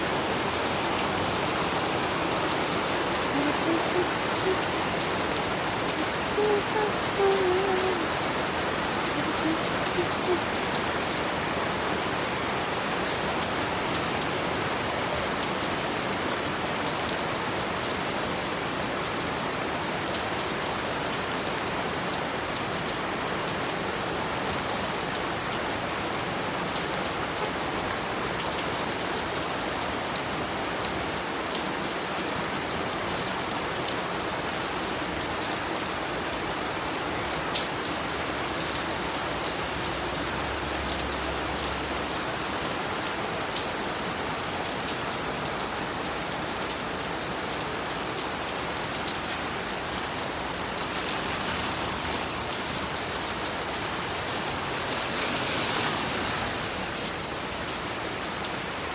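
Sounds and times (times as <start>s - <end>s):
rain falling: 0.0s - 58.9s
raindrops ticking: 2.8s - 8.2s.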